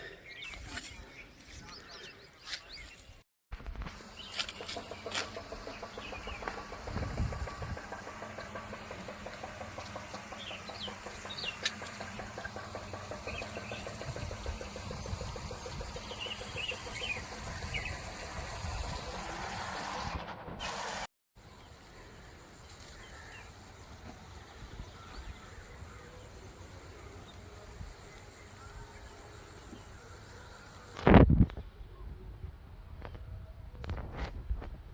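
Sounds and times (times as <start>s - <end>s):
birds chirping: 0.0s - 3.2s, 4.0s - 20.2s.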